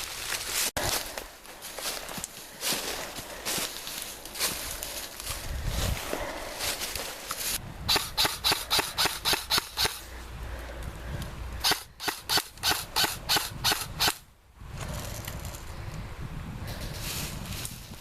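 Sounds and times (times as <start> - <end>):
airsoft gun shots: 7.9 - 10.0, 11.6 - 14.2.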